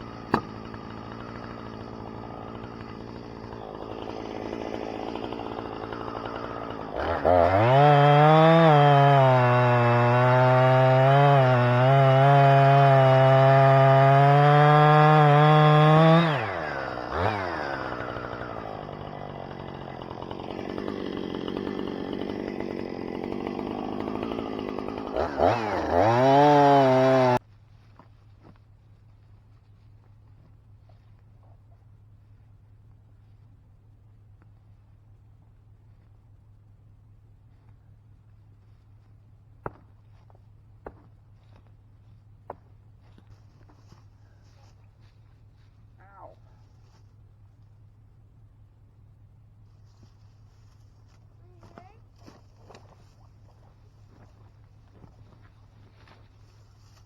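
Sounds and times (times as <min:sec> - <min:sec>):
chainsaw cutting wood: 0:00.0 - 0:27.4, 0:38.9 - 0:45.7, 0:49.8 - 0:57.0
chainsaw idling and revving: 0:00.0 - 0:27.4, 0:49.9 - 0:57.0.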